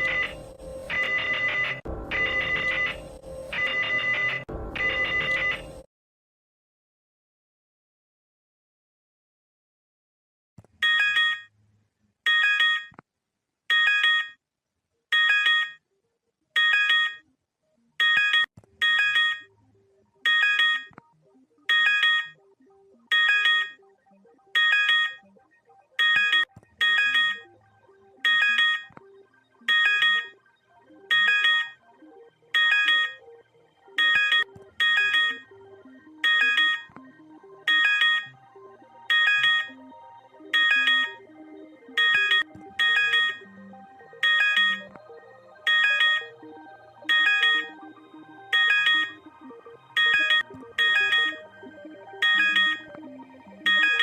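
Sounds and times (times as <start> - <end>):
emergency alert beeps: 0.0 - 5.9, 21.7 - 54.0.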